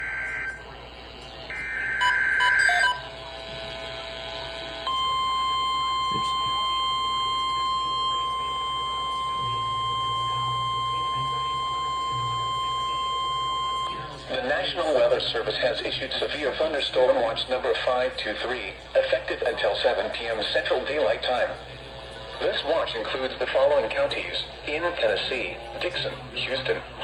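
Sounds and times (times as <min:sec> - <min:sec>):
steady warning alarm tone: 0:00.0 - 0:17.9.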